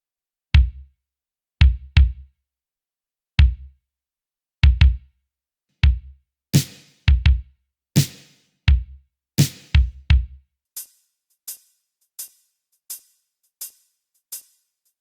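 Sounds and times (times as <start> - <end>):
drum machine kick: 0.6 - 0.8, 1.6 - 2.2, 3.4 - 3.7, 4.6 - 5.0, 5.8 - 7.4, 8.0 - 10.4
snare with hissing tail: 6.6 - 7.0, 8.0 - 8.4, 9.4 - 9.8.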